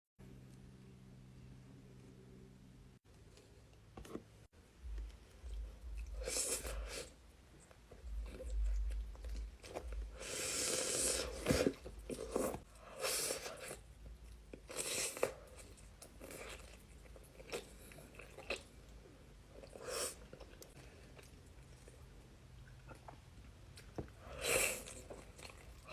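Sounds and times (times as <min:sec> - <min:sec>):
wet chewing: 0:19.6 - 0:25.9.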